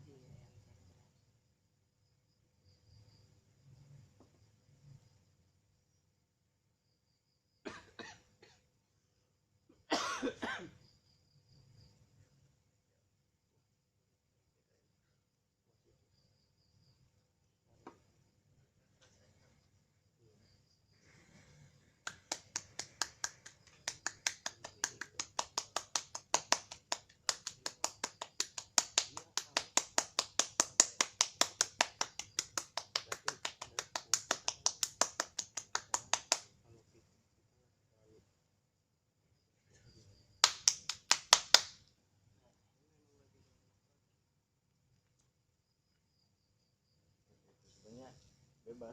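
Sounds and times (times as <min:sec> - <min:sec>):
person coughing: 0:09.9 - 0:10.7
hand slapping skin: 0:22.0 - 0:36.5, 0:40.4 - 0:41.8.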